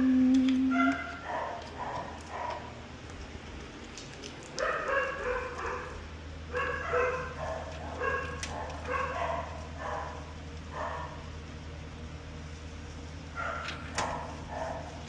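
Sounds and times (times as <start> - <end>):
dog barking: 0.7 - 2.7, 4.6 - 11.2, 13.4 - 15.0.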